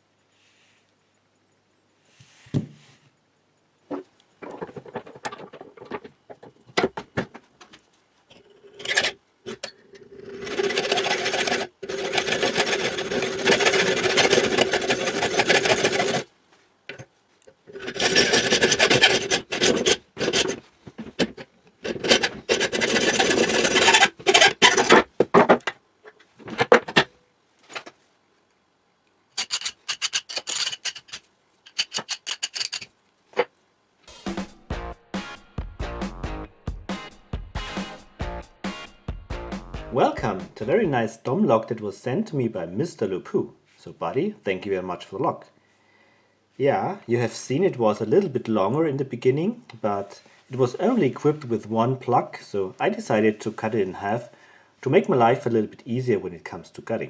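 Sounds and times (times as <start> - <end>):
saw rasping through metal: 8.8 - 9.2, 10.3 - 16.3, 17.7 - 20.6, 21.8 - 25.0.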